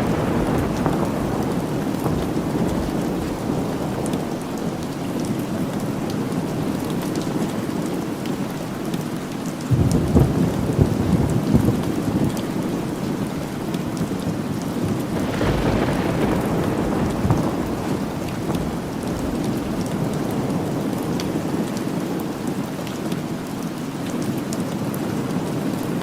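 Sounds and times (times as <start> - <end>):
low rumble of thunder: 0.0 - 7.1, 9.7 - 22.5
steady rain falling: 0.0 - 26.0.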